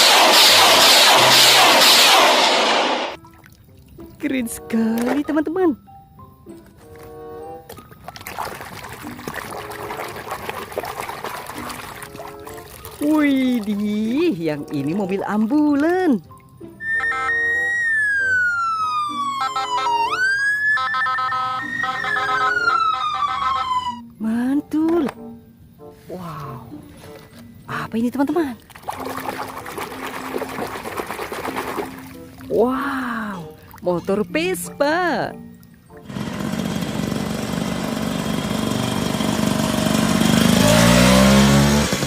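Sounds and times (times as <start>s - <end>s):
electronic background music: 0.0s - 36.1s
ambulance siren wailing: 16.8s - 24.2s
scooter engine idling: 36.1s - 40.8s.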